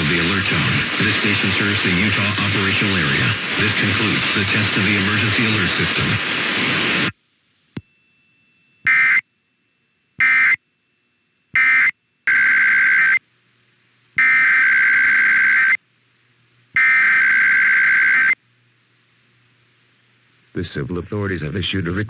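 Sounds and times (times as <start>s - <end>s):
harsh buzzing digital data bursts: 8.9s - 9.2s, 10.2s - 10.6s, 11.6s - 13.2s, 14.2s - 15.8s, 16.8s - 18.4s.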